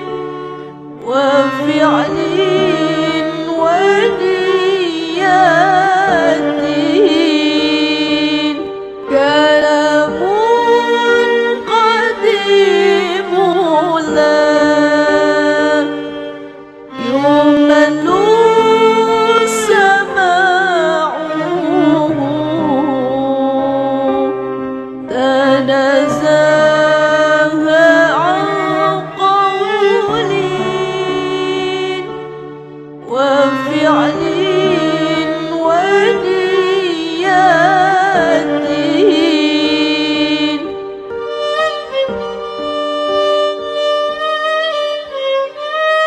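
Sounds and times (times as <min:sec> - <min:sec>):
sustained musical accompaniment: 0:00.0 - 0:46.0.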